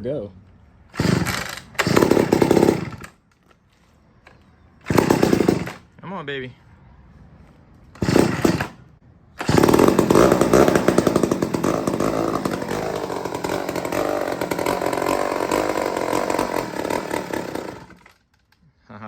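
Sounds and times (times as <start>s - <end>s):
chainsaw starting and revving: 0.9s - 3.2s, 4.8s - 5.8s, 8.0s - 8.8s, 9.4s - 18.2s.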